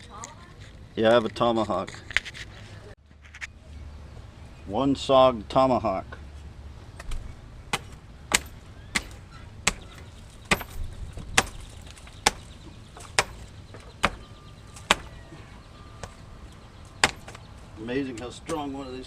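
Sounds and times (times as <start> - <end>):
tomahawk chopping into roots: 7.0 - 15.2, 17.0 - 17.4.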